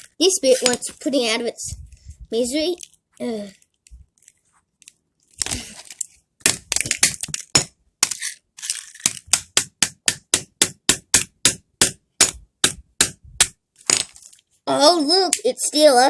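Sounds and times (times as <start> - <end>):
plastic phone being smashed: 6.4 - 9.6.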